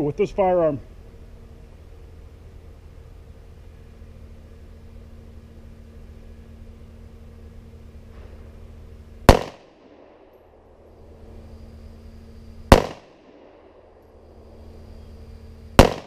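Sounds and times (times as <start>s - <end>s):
steady low hum: 0.0s - 16.0s
pistol shot: 9.3s - 10.4s, 12.7s - 13.8s, 15.8s - 16.0s.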